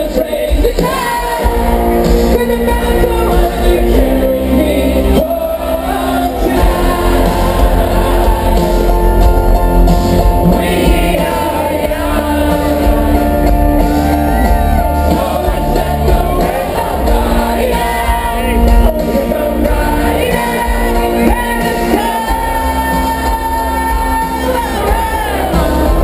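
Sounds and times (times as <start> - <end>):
lead singer singing: 0.0 - 26.0
live pop-rock band: 0.0 - 26.0
crowd shouting: 4.9 - 9.2, 10.5 - 26.0.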